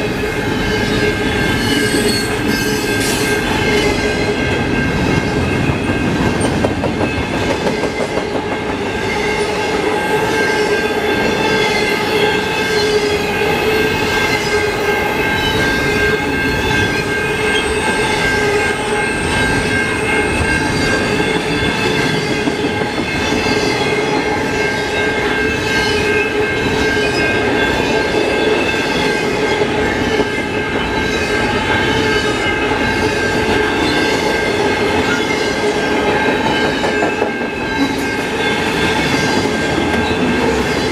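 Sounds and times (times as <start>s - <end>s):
freight train rumbling past: 0.0s - 40.9s
wheels clickety-clack: 2.0s - 9.0s, 32.8s - 40.9s.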